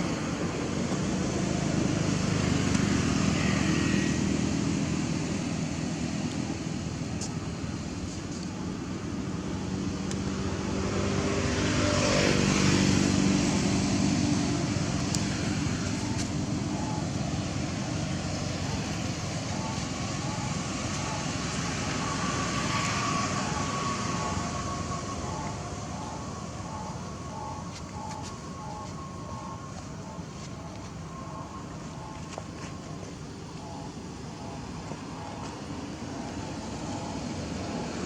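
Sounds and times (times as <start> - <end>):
vehicle passing: 9.5 - 38.0
faint beeps: 14.7 - 38.0.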